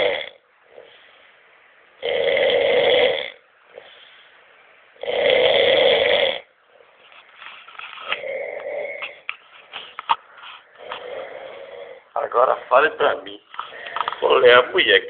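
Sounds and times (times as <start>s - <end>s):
man snoring loudly: 0.0s - 0.4s, 2.0s - 3.4s, 5.0s - 6.5s, 8.2s - 9.1s, 10.8s - 12.1s
quiet breathing: 0.6s - 1.8s, 3.6s - 5.0s, 6.6s - 14.4s.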